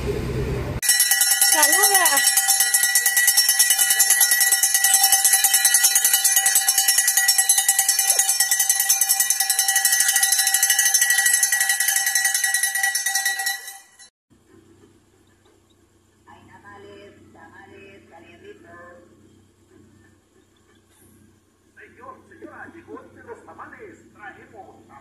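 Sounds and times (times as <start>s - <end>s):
metal bell rung rapidly: 0.8s - 14.1s.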